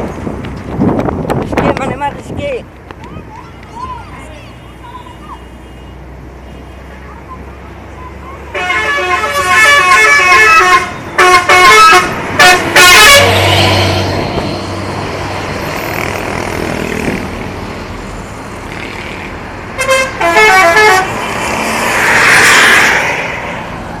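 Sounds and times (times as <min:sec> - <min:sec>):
large vehicles passing: 0:00.0 - 0:24.0
multi-tone musical horns: 0:08.5 - 0:14.2, 0:19.8 - 0:21.2.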